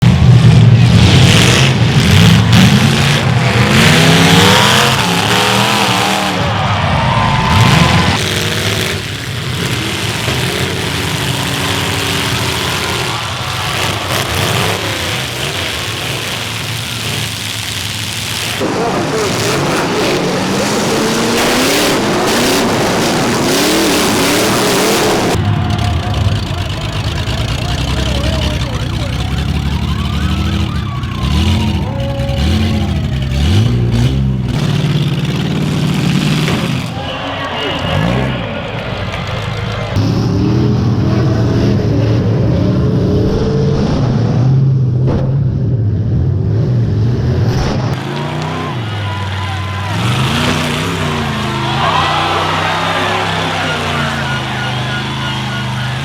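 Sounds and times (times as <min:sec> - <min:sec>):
car engines revving hard: 0:00.0 - 0:56.0
loud noisy din: 0:00.0 - 0:56.0
sharp car crash: 0:45.0 - 0:45.8.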